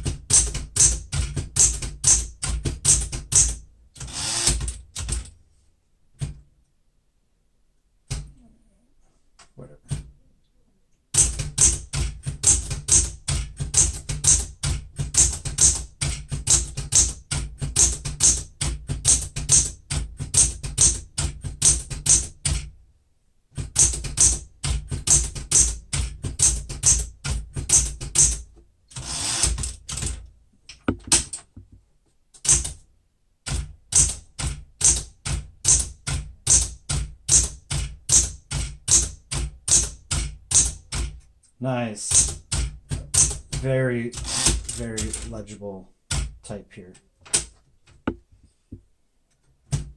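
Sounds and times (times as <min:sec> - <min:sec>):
manual typewriter typing: 0:00.0 - 0:05.4, 0:11.1 - 0:22.7, 0:23.6 - 0:30.2, 0:32.4 - 0:32.8, 0:33.4 - 0:41.3, 0:42.0 - 0:45.5.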